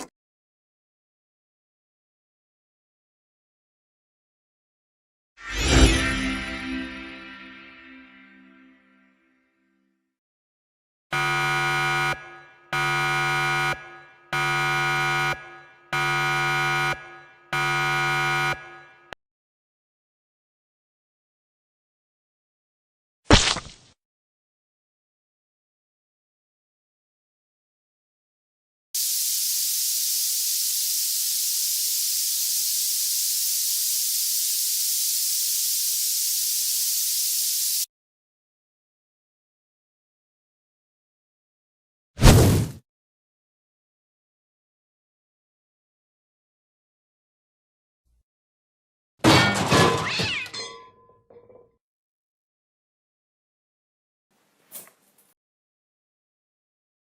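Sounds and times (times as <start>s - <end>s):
harsh electronic buzzer blasts: 11.1s - 19.2s
high-pitched hiss: 29.0s - 37.9s.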